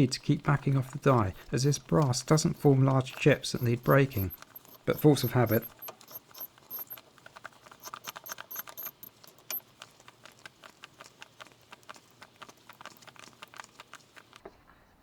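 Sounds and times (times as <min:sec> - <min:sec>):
die cutting thread on metal clicking: 0:00.0 - 0:11.2.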